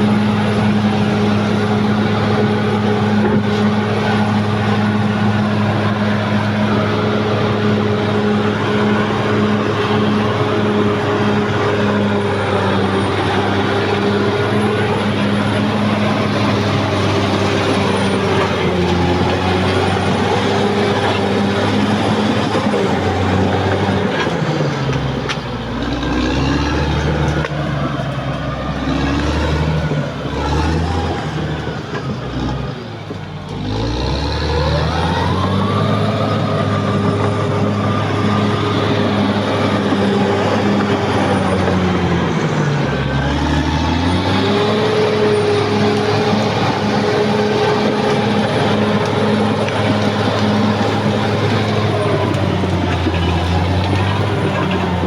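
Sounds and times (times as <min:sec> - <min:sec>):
bulldozer diesel engine running: 0:00.0 - 0:55.0.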